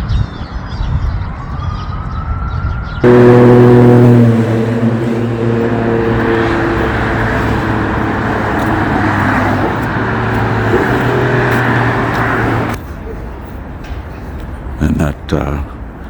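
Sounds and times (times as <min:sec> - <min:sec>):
road noise: 0:00.0 - 0:16.0
vehicle engine running: 0:03.0 - 0:12.8.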